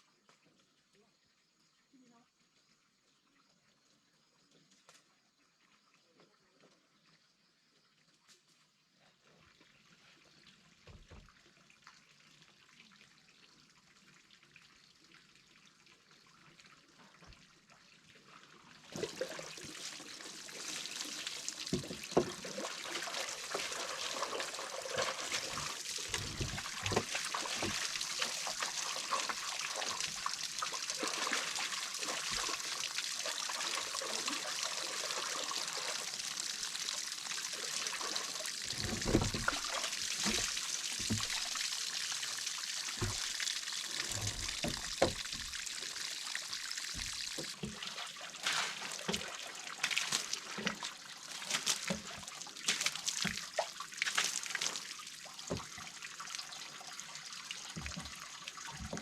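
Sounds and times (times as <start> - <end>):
water running and trickling: 9.5 - 59.0
knocks and splashes: 18.9 - 54.9, 55.5 - 55.9, 57.7 - 59.0.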